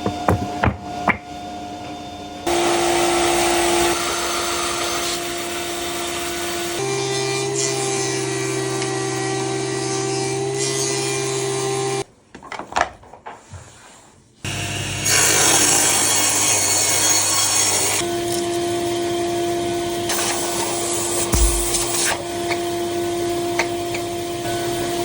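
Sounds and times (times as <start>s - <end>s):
light knocks: 0.0s - 1.3s
power tool motor hum: 21.2s - 22.3s.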